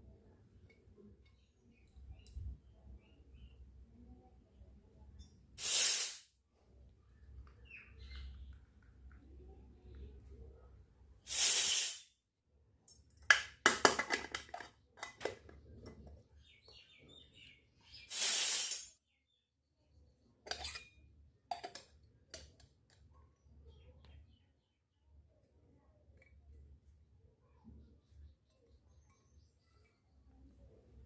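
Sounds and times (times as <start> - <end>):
short loud hissing: 5.6 - 6.3, 11.3 - 12.1, 18.1 - 19.0
toy kitchenware clinking: 12.8 - 16.2, 20.4 - 23.1.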